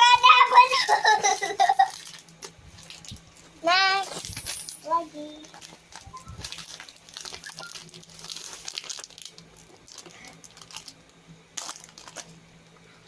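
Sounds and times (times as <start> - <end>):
plastic snack bag crinkling: 1.8 - 12.4.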